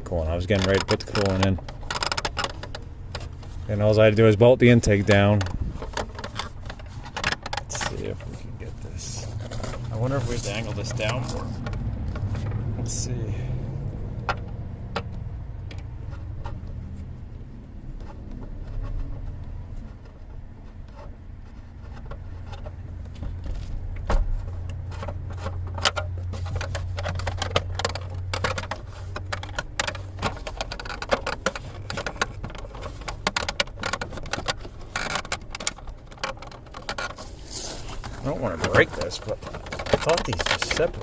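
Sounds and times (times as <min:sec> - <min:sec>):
plastic cover clicking and rattling: 0:00.0 - 0:41.0.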